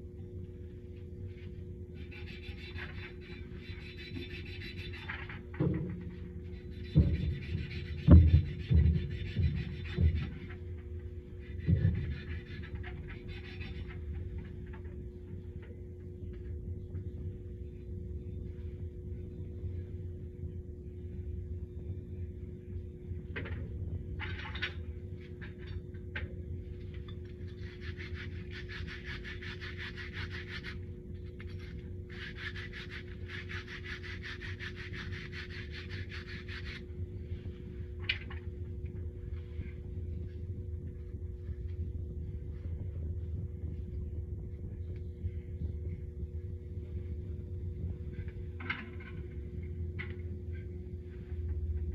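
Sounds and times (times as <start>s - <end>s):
low rumble with hum: 0.0s - 51.9s.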